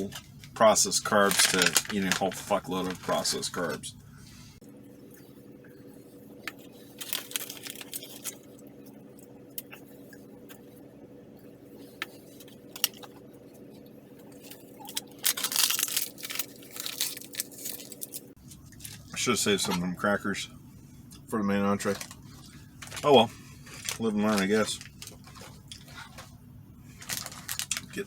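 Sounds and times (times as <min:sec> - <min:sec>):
plastic packets crinkling: 0:00.0 - 0:03.8, 0:06.5 - 0:10.0, 0:14.2 - 0:19.1, 0:21.8 - 0:28.0
steady low hum: 0:00.0 - 0:28.0.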